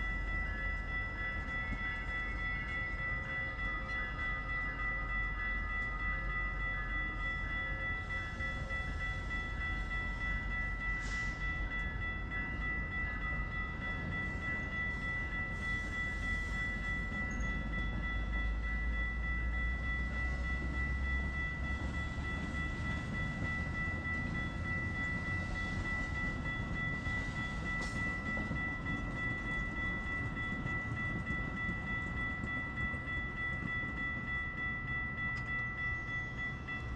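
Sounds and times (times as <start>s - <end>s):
train rumbling past: 0.0s - 36.9s.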